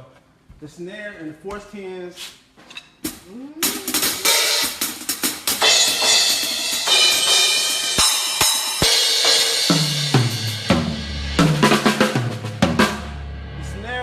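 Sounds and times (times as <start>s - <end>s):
snare and bass drum strokes: 3.1s - 14.0s
cymbals ringing: 5.6s - 14.0s.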